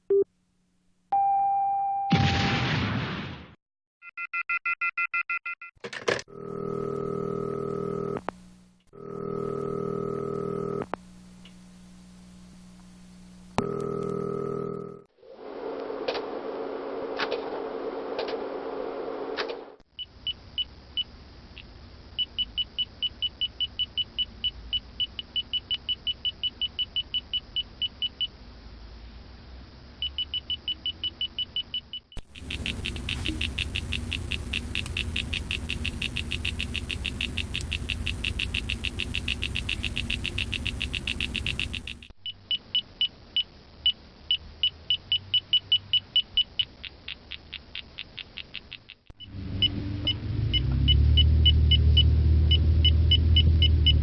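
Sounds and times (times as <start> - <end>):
radar detector beeping: 30.0 - 43.1
car low rumble: 49.3 - 54.0.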